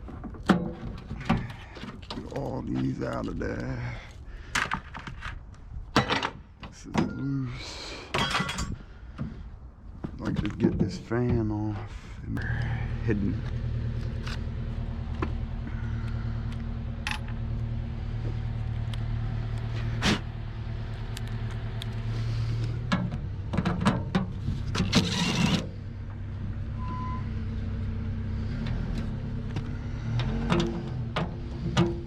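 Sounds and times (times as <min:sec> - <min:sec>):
low engine hum: 0:08.9 - 0:32.0.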